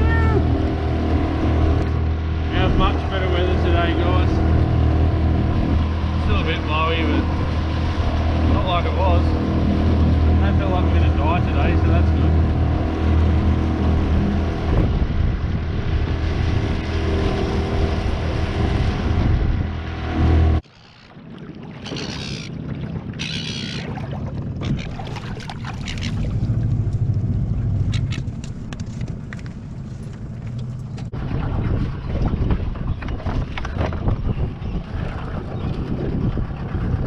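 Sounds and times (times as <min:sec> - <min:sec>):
outboard motor running: 0:00.0 - 0:37.0
water noise: 0:00.0 - 0:37.0
wind: 0:00.0 - 0:37.0.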